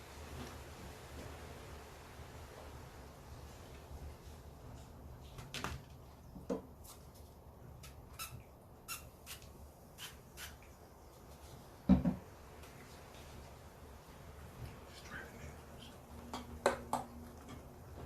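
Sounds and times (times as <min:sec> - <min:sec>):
low steady hum: 0:10.6 - 0:18.0.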